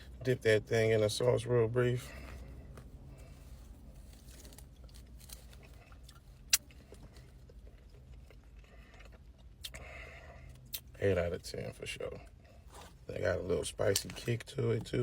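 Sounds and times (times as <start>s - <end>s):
steady low hum: 0.0s - 15.0s
man chewing: 4.0s - 10.9s.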